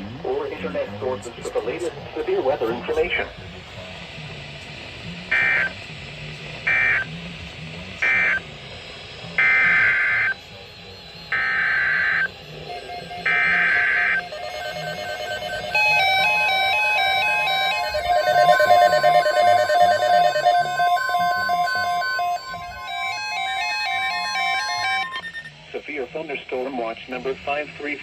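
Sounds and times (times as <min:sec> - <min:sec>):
buzzy digital data bursts: 0:08.0 - 0:26.4
radio alert beeps: 0:11.4 - 0:25.6.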